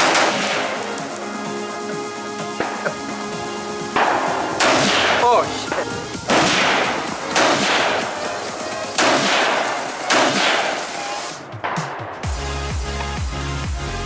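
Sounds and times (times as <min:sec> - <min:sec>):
rifle shots echoing: 0:00.0 - 0:01.2, 0:04.0 - 0:05.4, 0:06.2 - 0:12.2
electronic music with steady beat: 0:00.0 - 0:14.0.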